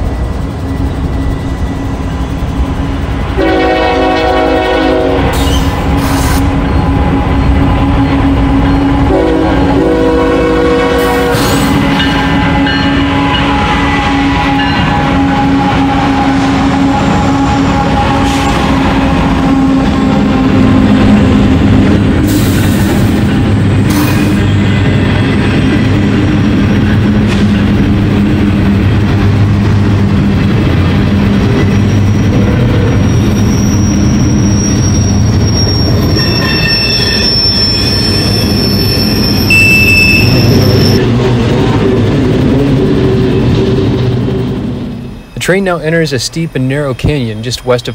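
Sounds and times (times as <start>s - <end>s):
diesel locomotive drone: 0.0s - 47.9s
wheel squeal: 5.3s - 6.4s, 31.6s - 41.0s.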